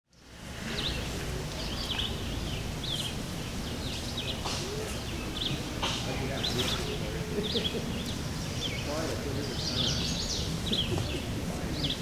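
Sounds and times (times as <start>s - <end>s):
small birds chirping: 0.7s - 12.0s
faint voices of people: 4.2s - 12.0s.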